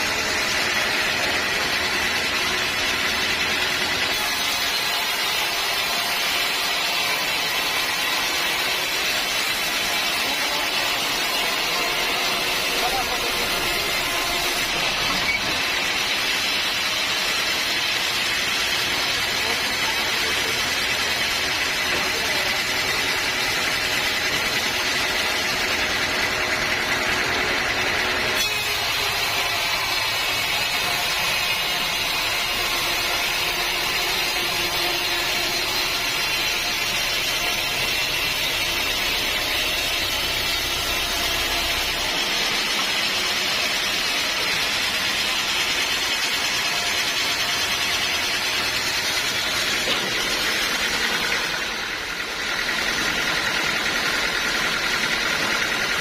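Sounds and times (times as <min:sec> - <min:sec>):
sawmill cutting log: 0:00.0 - 0:56.0.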